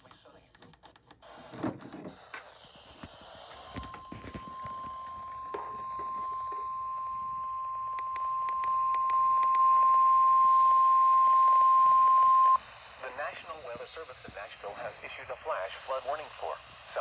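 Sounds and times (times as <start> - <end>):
steady high alarm beep: 4.0 - 12.6.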